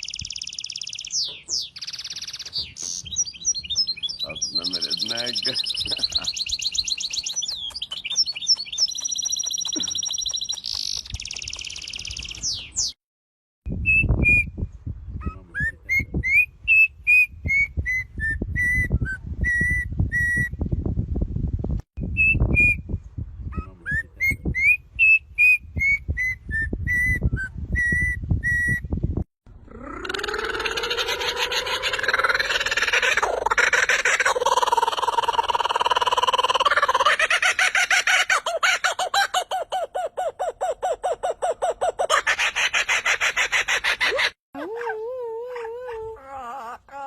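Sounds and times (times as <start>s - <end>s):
bird whistled notes: 24.5s - 28.9s.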